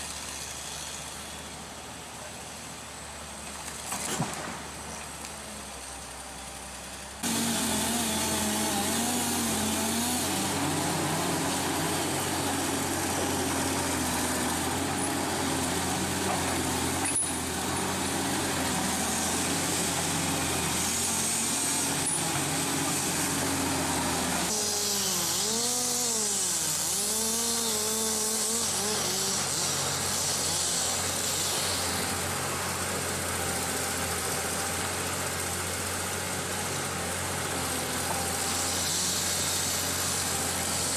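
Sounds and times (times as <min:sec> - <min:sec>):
tree-cutting machine engine: 0:00.0 - 0:40.9.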